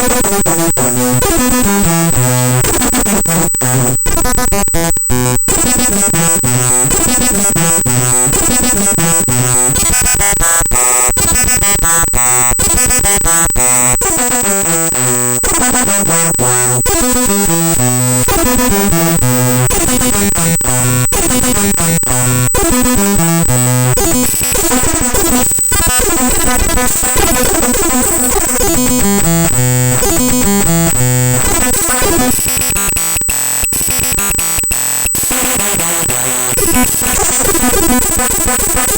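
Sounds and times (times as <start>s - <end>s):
harsh digital buzzing: 0.0s - 38.9s.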